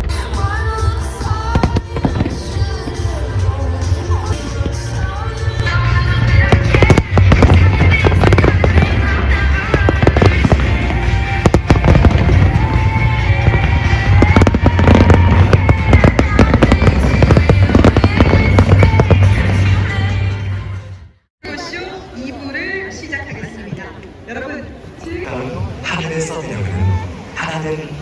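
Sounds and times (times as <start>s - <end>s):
loud show music with deep bass: 0.0s - 21.0s
fireworks shells bursting: 5.6s - 20.3s.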